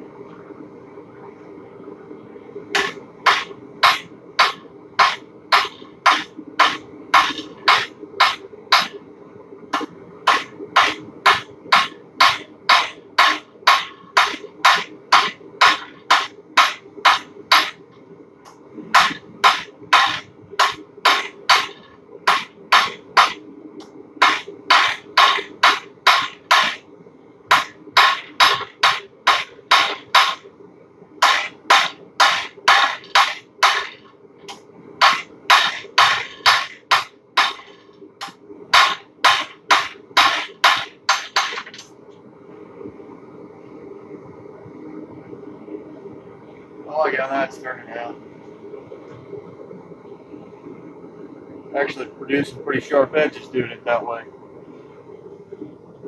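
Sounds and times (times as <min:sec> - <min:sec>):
faint steady hum: 0:00.0 - 0:56.0
hammer ringing on anvil: 0:02.8 - 0:09.0, 0:09.8 - 0:17.8, 0:19.0 - 0:23.4, 0:24.2 - 0:26.8, 0:27.5 - 0:30.4, 0:31.2 - 0:34.0, 0:35.0 - 0:37.9, 0:38.8 - 0:41.8.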